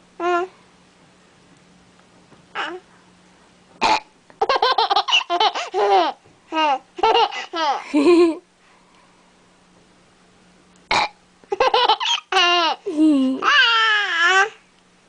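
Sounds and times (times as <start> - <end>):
baby laughing: 4.4 - 8.4, 11.5 - 14.6.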